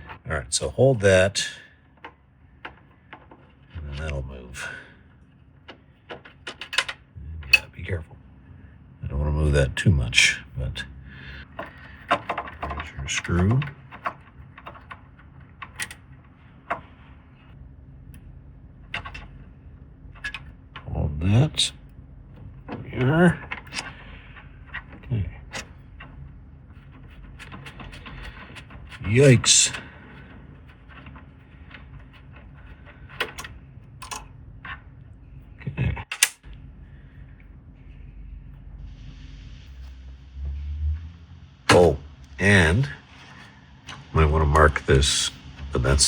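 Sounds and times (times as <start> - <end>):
clicks and taps of small parts: 33.1 - 34.3, 36.1 - 36.4.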